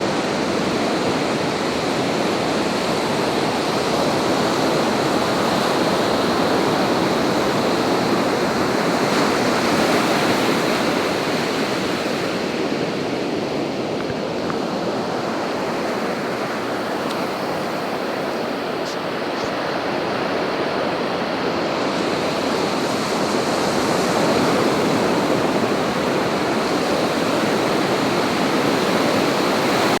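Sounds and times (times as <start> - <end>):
ocean waves breaking: 0.0 - 30.0.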